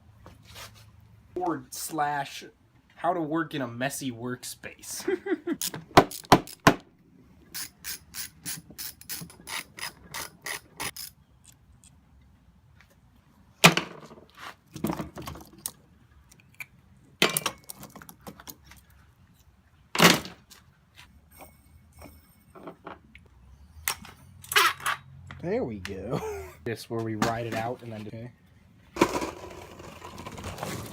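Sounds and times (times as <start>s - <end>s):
ratchet wrench clicking: 7.6s - 11.6s.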